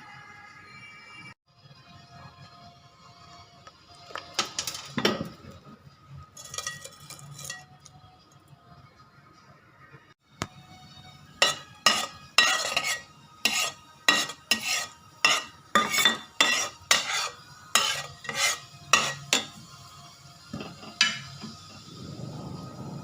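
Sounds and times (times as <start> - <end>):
metal utensil scraping a pan: 6.4 - 7.9, 11.4 - 19.6.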